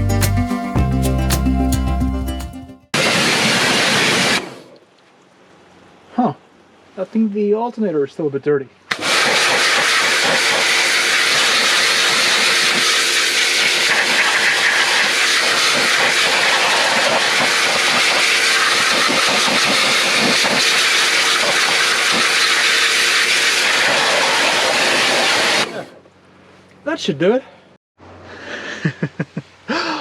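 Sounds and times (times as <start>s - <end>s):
pressure washer spraying water: 3.0s - 4.6s, 8.9s - 25.9s.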